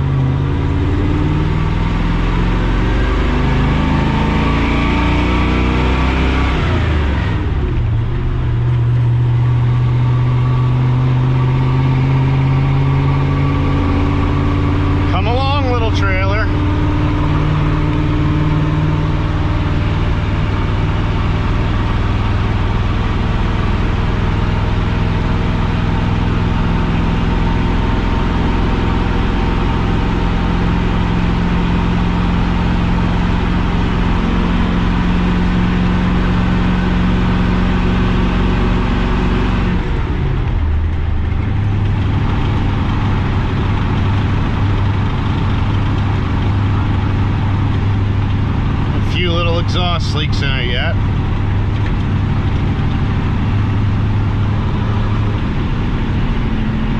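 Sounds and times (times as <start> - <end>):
truck engine under load: 5.2 - 56.9.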